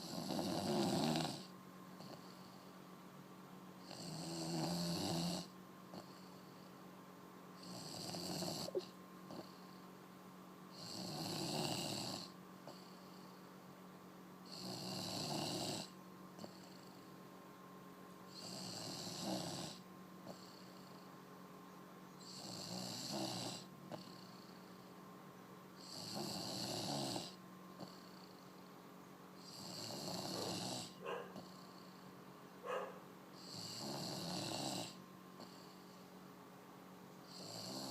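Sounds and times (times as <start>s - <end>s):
snoring: 0.0s - 2.7s, 3.8s - 6.7s, 7.6s - 9.8s, 10.7s - 13.4s, 14.4s - 17.1s, 18.3s - 21.1s, 22.2s - 24.9s, 25.8s - 28.7s, 29.4s - 32.1s, 32.7s - 36.0s, 37.2s - 37.9s.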